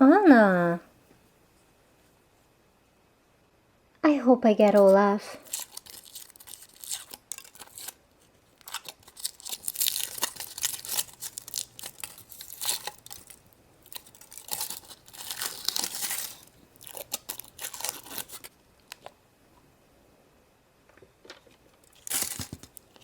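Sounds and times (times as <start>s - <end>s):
foil wrapper crinkling and tearing: 4.7s - 19.1s, 21.8s - 23.0s.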